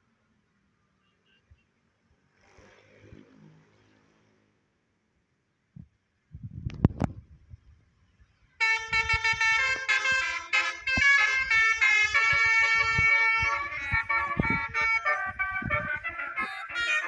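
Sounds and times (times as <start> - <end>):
musical air horn tune: 8.6 - 17.0.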